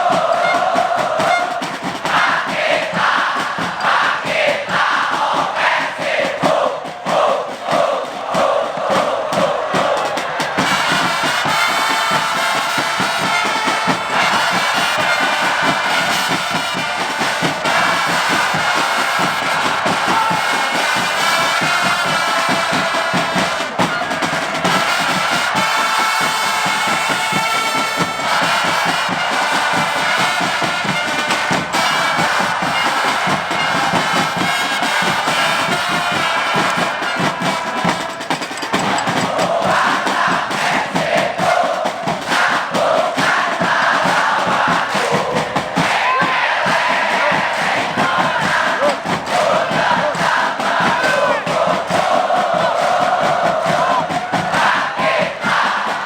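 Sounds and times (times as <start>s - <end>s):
crowd: 0.0s - 56.0s
drums beating: 0.0s - 56.0s
brass horn notes: 10.6s - 38.4s.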